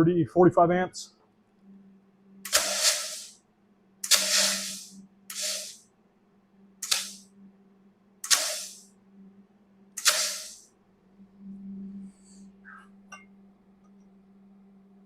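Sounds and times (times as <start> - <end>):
plasma cutter bursts: 2.5 - 3.4, 4.0 - 5.8, 6.8 - 7.2, 8.2 - 8.8, 10.0 - 10.6.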